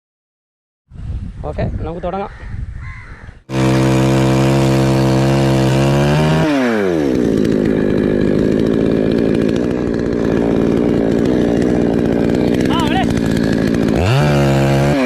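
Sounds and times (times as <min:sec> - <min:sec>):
chainsaw running: 0:03.5 - 0:15.0.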